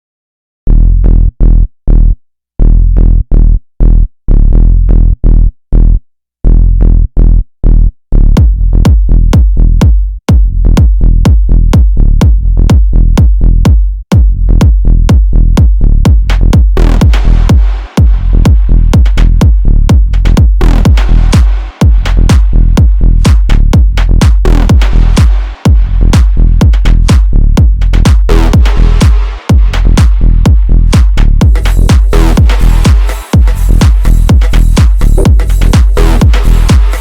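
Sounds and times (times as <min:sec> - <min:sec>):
choppy bass stabs: 0:00.7 - 0:37.0
fast high ticking beat: 0:08.4 - 0:37.0.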